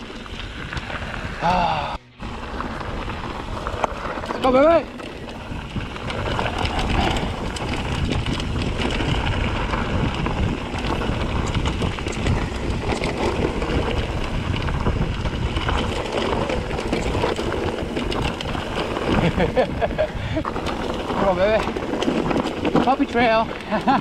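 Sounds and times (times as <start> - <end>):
mountain bike rumbling and rattling: 0.0 - 24.0
wind buffeting microphone: 0.0 - 24.0.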